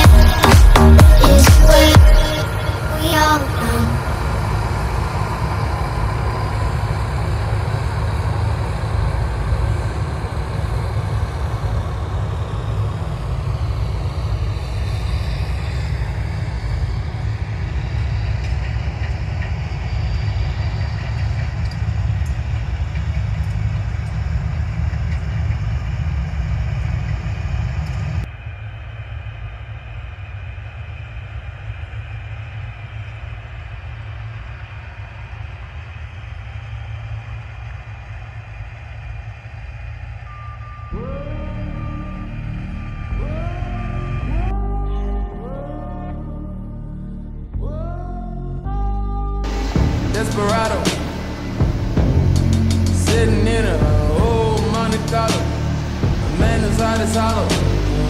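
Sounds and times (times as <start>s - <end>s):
combine harvester running: 2.3s - 29.4s, 49.5s - 58.0s.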